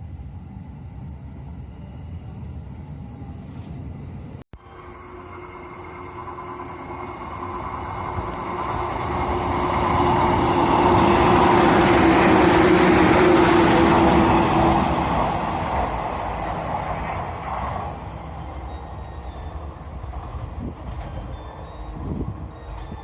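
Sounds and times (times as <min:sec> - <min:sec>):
electric train passing by: 0:00.0 - 0:23.0
steady tone: 0:04.6 - 0:19.7.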